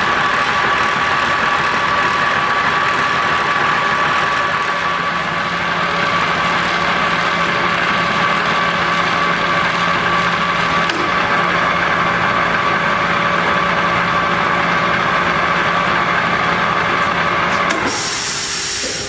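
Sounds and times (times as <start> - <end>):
lathe running with whine: 0.0 - 19.0.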